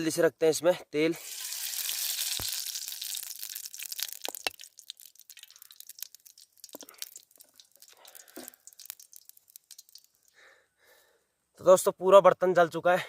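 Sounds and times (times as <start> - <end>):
oil sizzling in a pot: 1.2 - 10.3
oil crackling and popping: 1.2 - 10.5.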